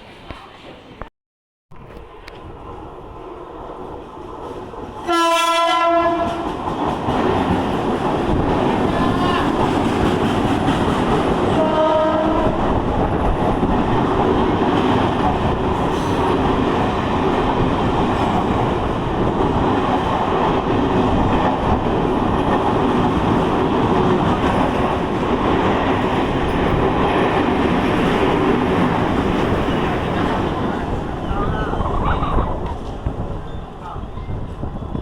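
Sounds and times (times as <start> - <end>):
train running past: 1.8 - 35.0
train horn blast: 5.1 - 6.5, 11.6 - 12.6.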